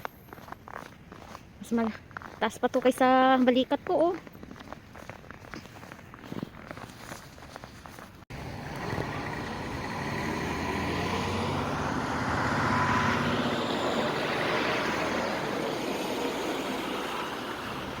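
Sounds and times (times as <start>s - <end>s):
vehicle driving past: 8.3s - 18.0s.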